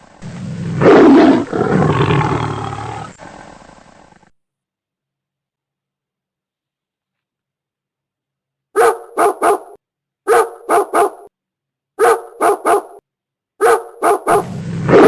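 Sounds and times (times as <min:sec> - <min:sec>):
dog barking: 0:08.8 - 0:11.3, 0:12.0 - 0:13.0, 0:13.6 - 0:15.0.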